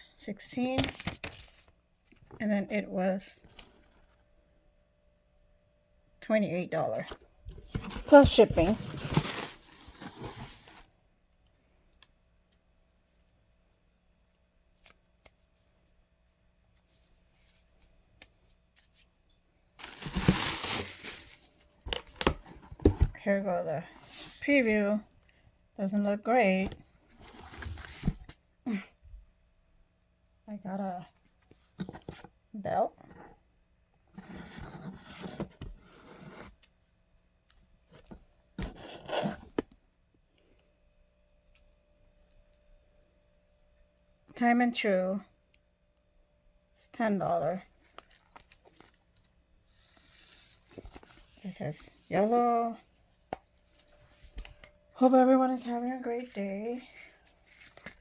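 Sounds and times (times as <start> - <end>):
rubbing and scraping handling noises: 6.9 - 10.9, 19.8 - 24.9, 37.9 - 39.7, 49.8 - 58.0
handling rustles: 7.0 - 10.9, 19.8 - 23.2
cardboard packaging tearing: 7.8 - 10.9, 19.8 - 22.3.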